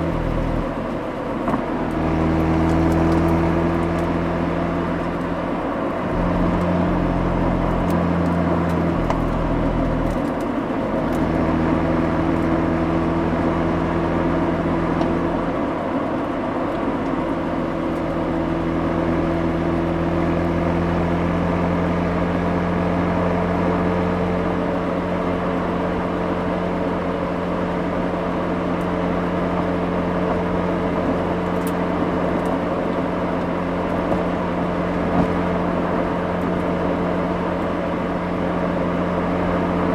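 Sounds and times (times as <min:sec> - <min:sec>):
tyre and road noise: 0:00.0 - 0:13.6, 0:27.8 - 0:39.9
rotary engine and exhaust: 0:00.0 - 0:39.9.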